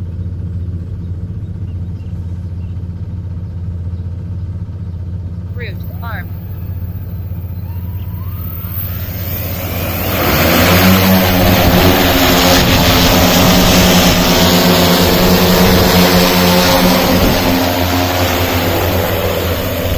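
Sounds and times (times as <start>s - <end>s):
drone rotors humming: 0.0s - 19.9s.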